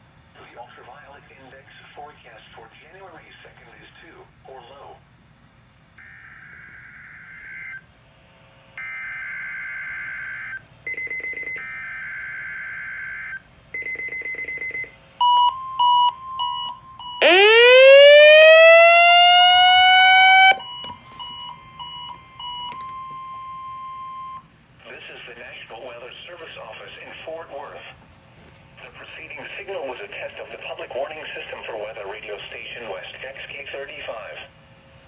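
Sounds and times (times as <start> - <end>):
steady alarm tone: 15.8 - 20.7.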